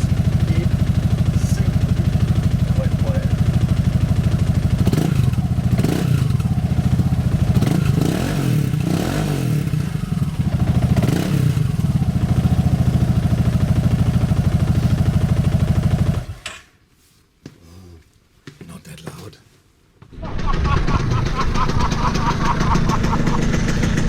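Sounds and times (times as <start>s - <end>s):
scooter engine idling: 0.0s - 16.4s, 20.7s - 24.0s
scooter engine throttle blips: 0.0s - 16.4s, 20.4s - 24.0s.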